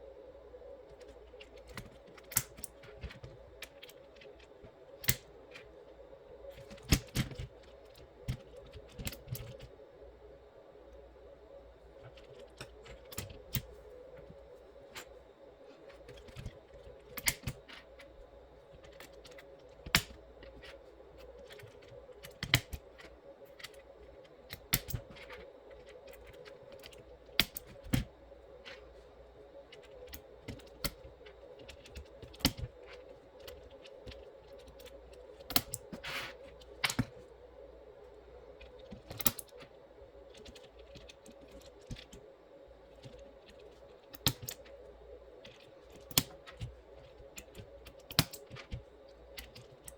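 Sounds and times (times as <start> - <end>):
faint steady hum: 0.0 - 49.9
mechanical keyboard clicks: 29.7 - 35.9, 38.6 - 39.6, 43.0 - 44.7, 45.4 - 49.9.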